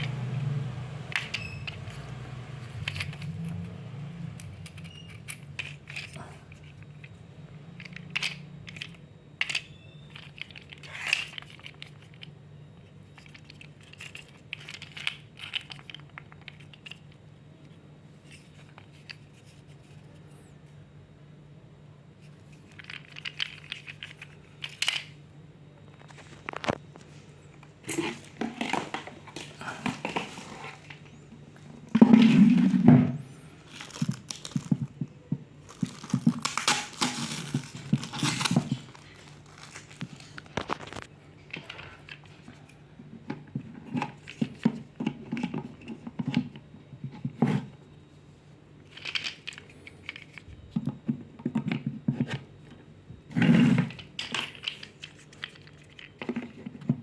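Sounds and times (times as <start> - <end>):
plastic wrapping crinkling and tearing: 33.6 - 35.0, 35.6 - 41.7.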